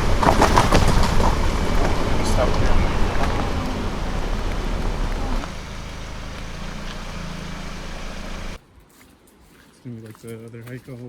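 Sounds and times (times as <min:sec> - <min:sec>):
car driving on road: 0:00.0 - 0:08.6.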